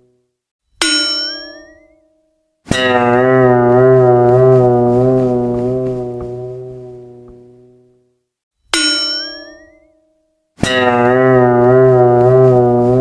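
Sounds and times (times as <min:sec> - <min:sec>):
wobbling brass-like note: 0:02.8 - 0:07.6, 0:10.8 - 0:13.0.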